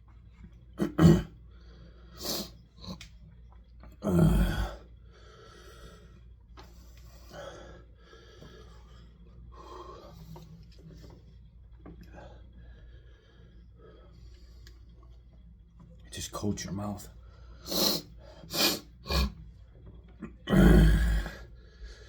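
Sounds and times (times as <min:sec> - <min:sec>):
person breathing heavily: 0:20.9 - 0:22.0.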